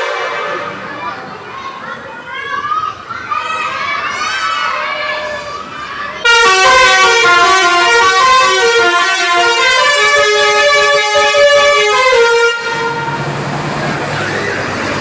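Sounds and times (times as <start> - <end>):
multi-tone bus horn melody: 0.0 - 1.0, 6.2 - 15.0.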